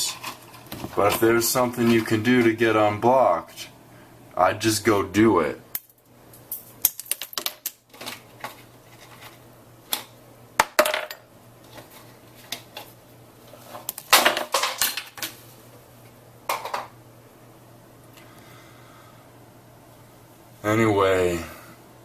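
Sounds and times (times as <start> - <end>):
hard objects clinking and clattering: 5.8 - 9.4, 13.8 - 15.4.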